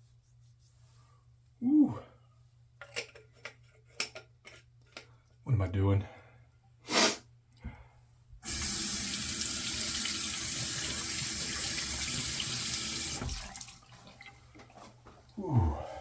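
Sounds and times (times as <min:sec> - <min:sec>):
brief hiss: 0:06.9 - 0:07.2
sink tap running: 0:08.4 - 0:14.2.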